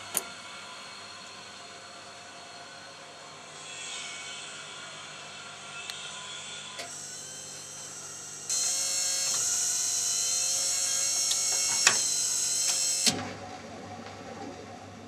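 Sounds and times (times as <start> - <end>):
jukebox mechanism whirring: 6.7 - 13.4.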